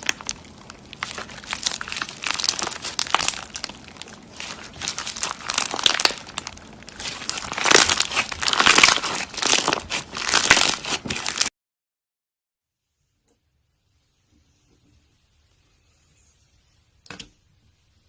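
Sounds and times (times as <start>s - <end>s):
slime squishing and popping: 0.0s - 11.5s.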